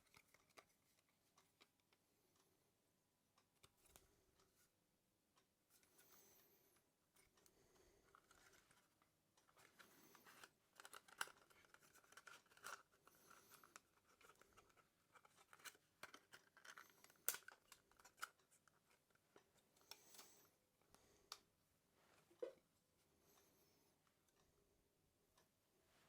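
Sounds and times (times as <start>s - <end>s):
light clicks of laptop parts: 7.2s - 20.5s.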